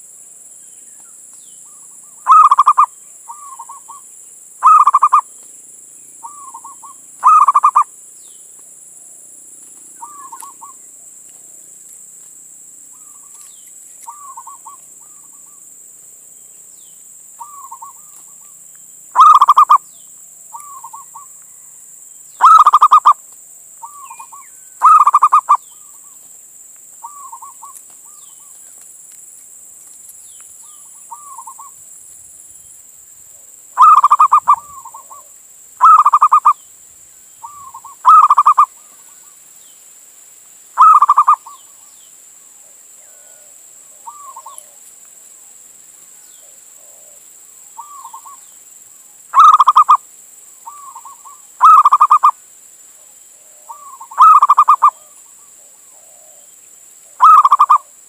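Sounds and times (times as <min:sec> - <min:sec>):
dove cooing: 0:02.2 - 0:04.0, 0:04.6 - 0:05.3, 0:06.2 - 0:07.9, 0:19.2 - 0:19.8, 0:22.4 - 0:23.2, 0:23.8 - 0:26.1, 0:33.8 - 0:36.6, 0:37.4 - 0:39.0, 0:40.8 - 0:41.6, 0:42.6 - 0:44.8, 0:47.8 - 0:48.4, 0:49.4 - 0:50.0, 0:50.7 - 0:52.3, 0:53.4 - 0:56.5, 0:57.1 - 0:57.9.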